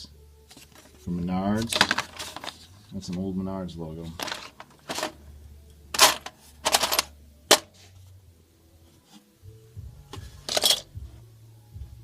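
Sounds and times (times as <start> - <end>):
tools clattering in a toolbox: 1.6 - 2.6, 4.1 - 5.2, 5.9 - 7.7, 10.4 - 11.0.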